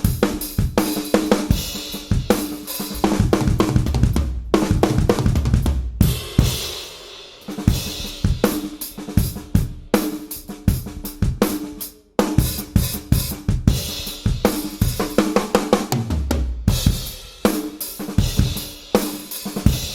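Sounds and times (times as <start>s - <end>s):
electronic drum kit playing: 0.0s - 6.8s.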